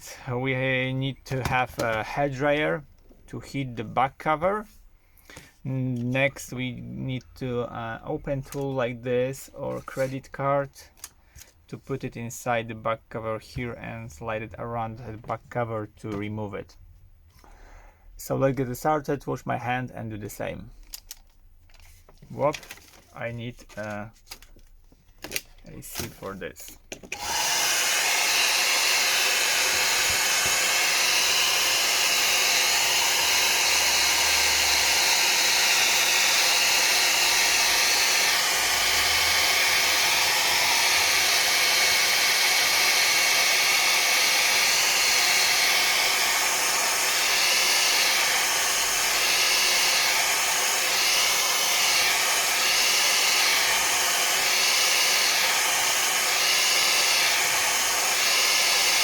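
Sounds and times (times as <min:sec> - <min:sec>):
hair dryer blowing air: 0:27.1 - 0:59.0
hair dryer switch: 0:27.1 - 0:59.0.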